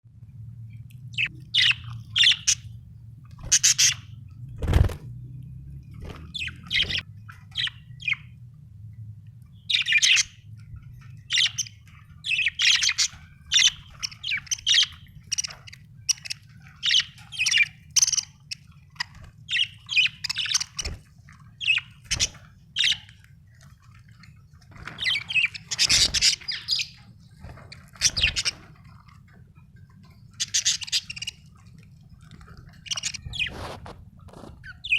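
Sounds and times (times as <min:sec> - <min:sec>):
steady low hum: 0:00.1 - 0:34.9
budgerigar chirping: 0:01.2 - 0:02.7, 0:03.5 - 0:04.2, 0:06.3 - 0:07.0, 0:09.7 - 0:10.4, 0:11.3 - 0:20.9, 0:25.0 - 0:27.0, 0:28.0 - 0:28.6, 0:30.4 - 0:31.4, 0:32.8 - 0:33.6.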